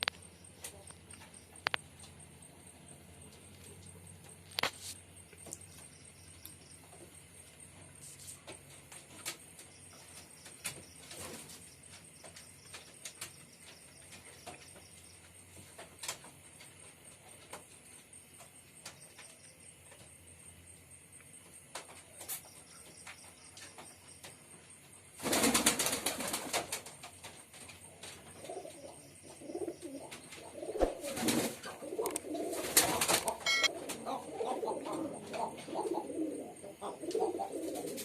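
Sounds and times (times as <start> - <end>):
pigeons tapping and clicking: 5.3 - 20.2, 21.3 - 38.0
low steady background: 33.2 - 37.5.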